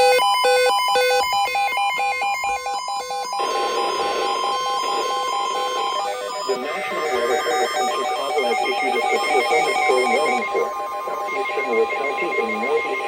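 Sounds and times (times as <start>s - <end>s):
electronic tones beeping: 3.4s - 13.0s.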